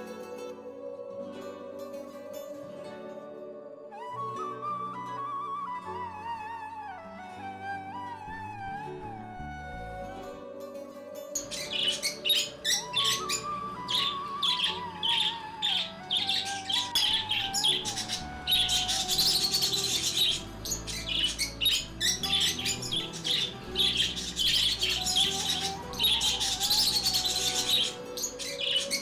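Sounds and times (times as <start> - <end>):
slow instrumental melody: 0.0 - 29.0
lovebirds chirping: 11.3 - 29.0.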